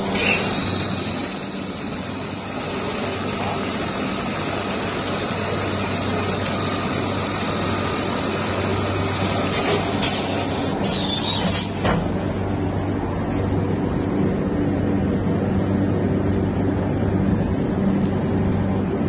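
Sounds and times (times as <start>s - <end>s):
drilling machine running: 0.0s - 11.8s.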